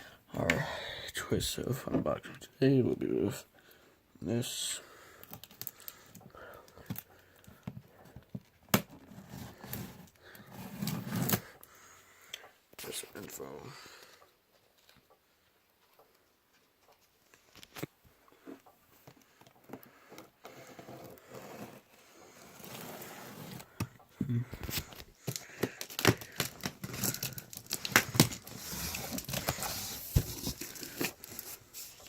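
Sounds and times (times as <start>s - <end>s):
tape and cardboard tearing: 10.6s - 11.5s, 24.6s - 32.0s
cardboard box clicks and knocks: 29.0s - 31.4s.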